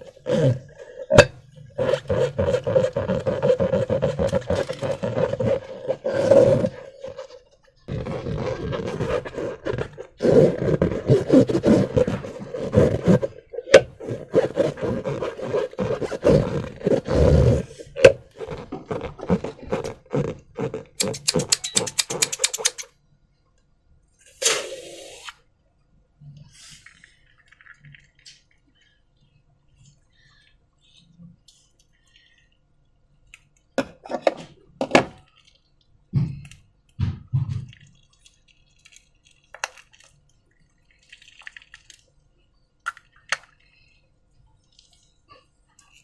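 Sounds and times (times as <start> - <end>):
rubber balloons squeaking with slime: 0.0 - 22.9
fast run of clicks: 21.0 - 22.9.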